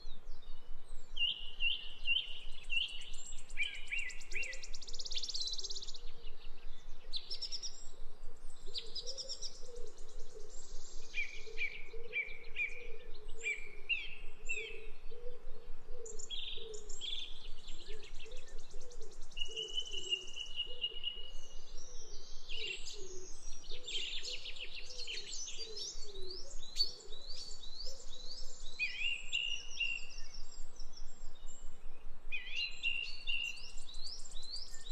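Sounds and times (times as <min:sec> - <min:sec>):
small birds chirping: 0:16.0 - 0:34.9.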